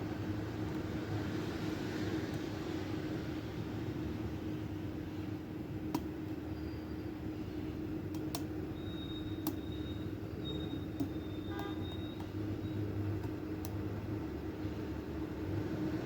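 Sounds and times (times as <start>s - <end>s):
low background hum: 0.0s - 16.0s
lock pick scraping squeak: 8.7s - 12.8s.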